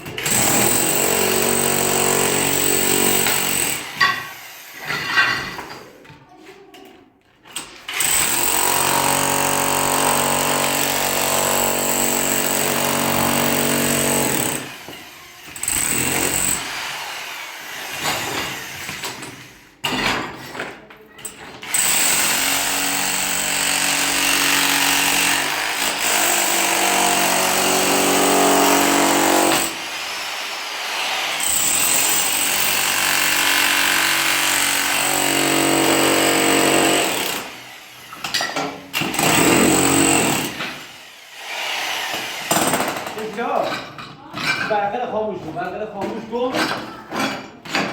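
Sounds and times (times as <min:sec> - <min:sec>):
demolition hammer running: 0:00.2 - 0:03.8, 0:08.0 - 0:14.8, 0:21.7 - 0:29.8, 0:31.4 - 0:37.5, 0:39.0 - 0:40.7.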